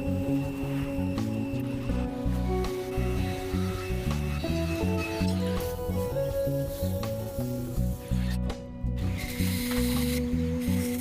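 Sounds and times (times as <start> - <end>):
background music with bass line: 0.0 - 11.0.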